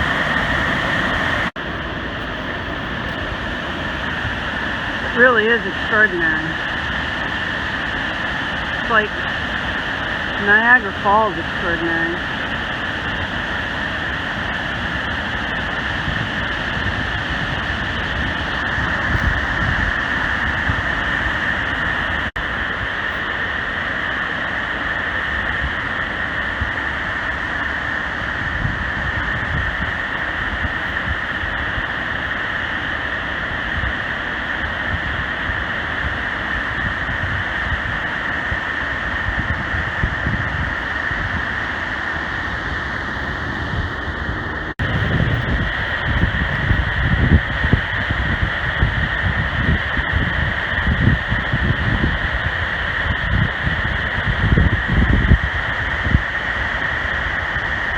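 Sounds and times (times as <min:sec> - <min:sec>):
waterfall roaring: 0:00.0 - 0:28.0, 0:40.4 - 0:46.1
wind buffeting microphone: 0:11.9 - 0:23.2, 0:28.0 - 0:32.0, 0:33.6 - 0:56.8.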